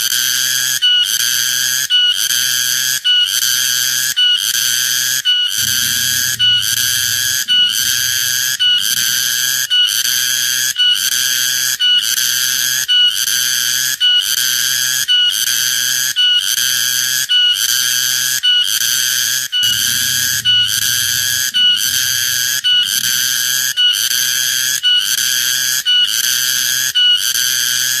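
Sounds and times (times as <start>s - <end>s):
cicada buzzing: 19.6s - 23.5s.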